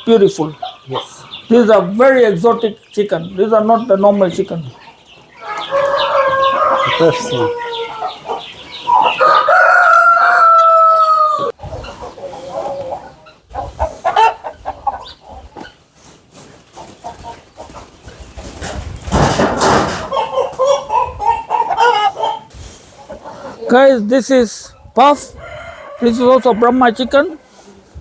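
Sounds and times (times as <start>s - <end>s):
chickens clucking: 0.0s - 28.0s
rooster crowing: 5.4s - 11.6s, 25.2s - 27.8s
rustling: 15.6s - 20.1s.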